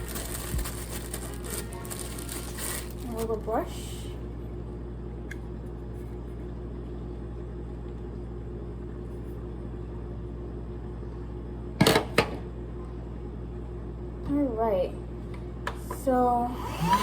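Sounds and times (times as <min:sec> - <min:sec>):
handheld vacuum humming: 0:00.0 - 0:03.1, 0:16.4 - 0:17.0.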